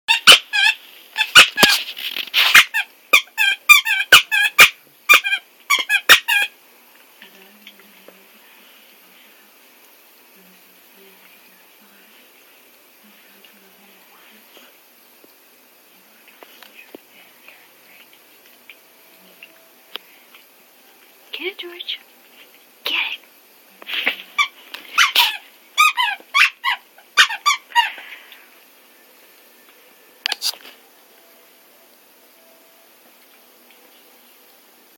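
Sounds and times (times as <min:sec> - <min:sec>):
squeaky toy squeaking: 0:00.1 - 0:01.8, 0:02.4 - 0:06.5, 0:24.4 - 0:27.9.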